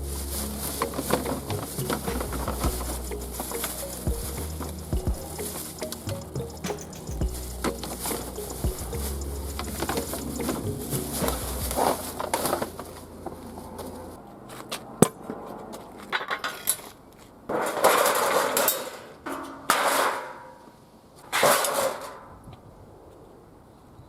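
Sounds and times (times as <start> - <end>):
metal parts clattering and clinking: 6.6 - 8.4.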